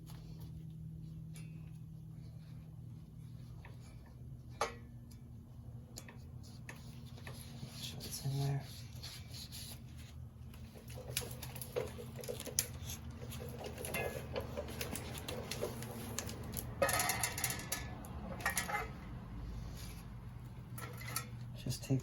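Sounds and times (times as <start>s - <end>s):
low steady hum: 0.0s - 22.0s
light metal clicks and taps: 5.9s - 6.8s
metal parts rubbing scrape: 10.8s - 20.1s, 20.7s - 21.4s.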